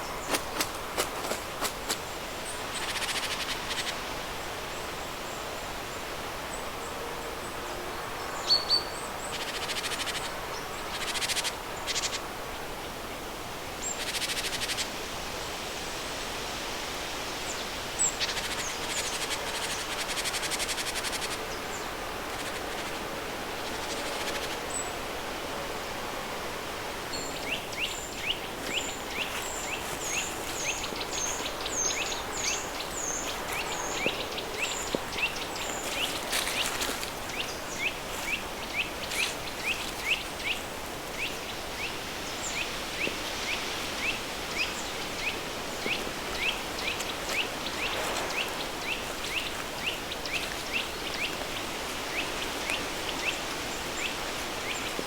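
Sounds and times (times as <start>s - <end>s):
river stream rushing: 25.7s - 55.0s.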